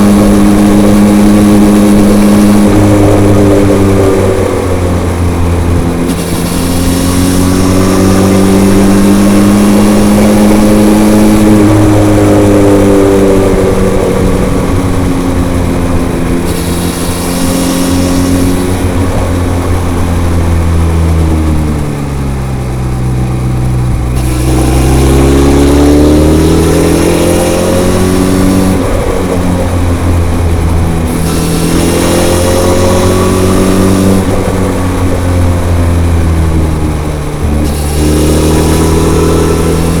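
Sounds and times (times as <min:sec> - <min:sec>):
motorcycle engine revving: 0:00.0 - 0:40.0.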